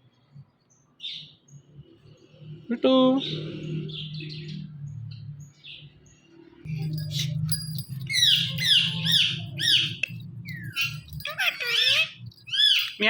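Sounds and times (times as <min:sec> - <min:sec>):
parakeet screeching: 0:08.1 - 0:13.0.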